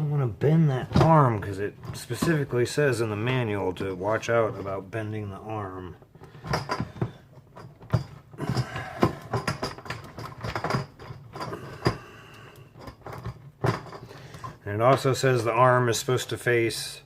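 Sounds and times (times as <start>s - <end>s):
metal clicks knocks and scrapes: 6.0s - 15.1s.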